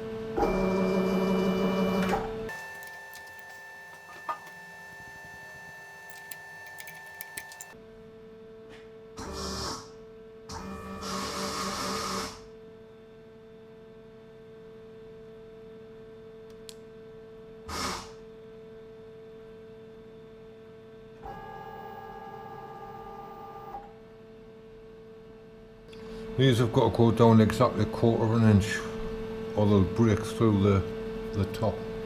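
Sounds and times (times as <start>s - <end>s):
high machine whine: 2.5s - 7.8s
milling machine humming: 2.5s - 7.8s.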